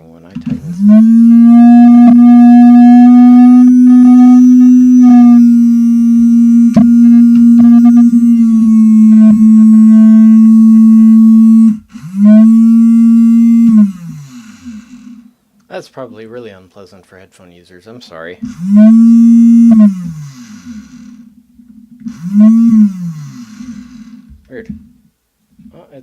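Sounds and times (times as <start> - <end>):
toy motor humming: 0.6 - 15.2, 18.4 - 21.2, 22.0 - 24.3.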